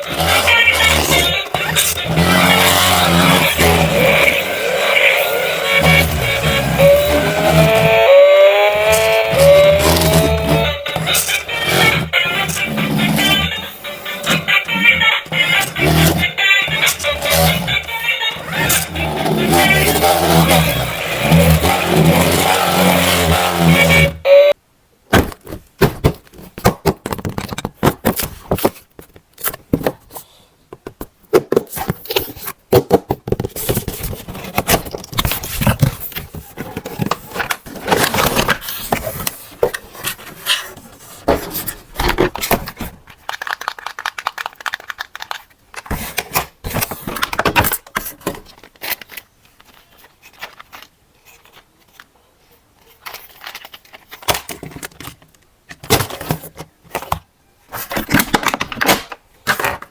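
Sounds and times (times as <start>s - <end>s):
loud music: 0.1s - 24.3s
plastic and cardboard packaging handled: 25.1s - 59.9s.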